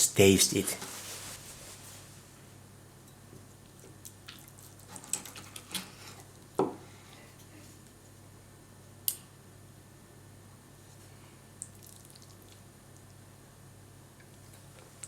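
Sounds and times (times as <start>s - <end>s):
low steady hum: 0.0s - 4.8s.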